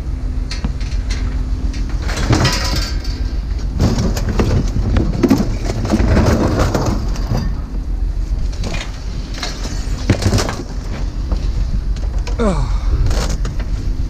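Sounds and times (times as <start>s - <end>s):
steady low rumble: 0.0s - 14.0s
scrap metal clattering: 0.5s - 7.7s, 8.4s - 12.4s.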